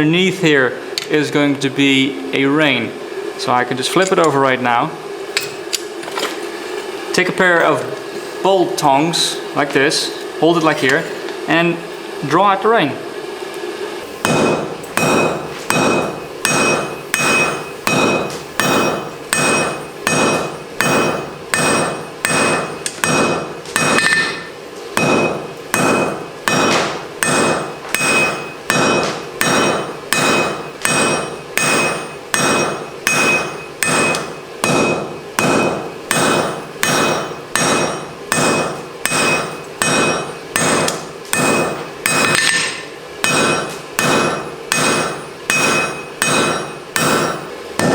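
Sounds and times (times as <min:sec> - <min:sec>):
hammer striking steel on anvil: 0:14.0 - 0:47.9.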